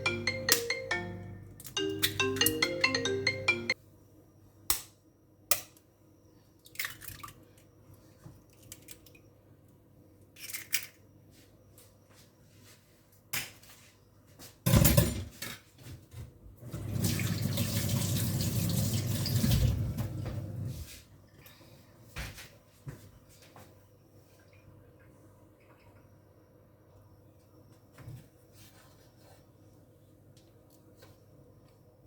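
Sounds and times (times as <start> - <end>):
water running from a tap: 16.7 - 20.0.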